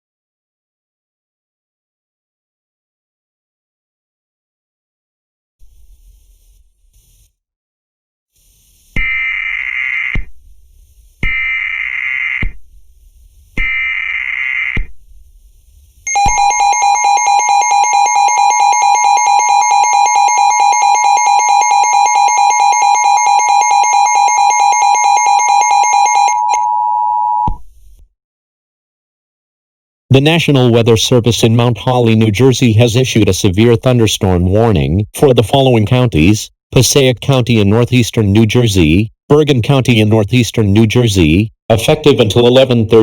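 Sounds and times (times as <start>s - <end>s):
data tone bursts: 16.1s - 25.1s
two-tone attention signal: 16.1s - 27.6s.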